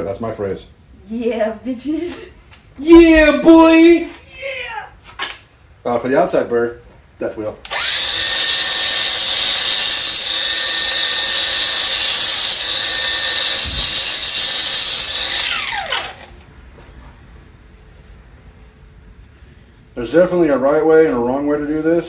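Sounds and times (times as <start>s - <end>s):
power tool grinding metal: 7.7s - 16.3s
motor winding down: 7.7s - 16.4s.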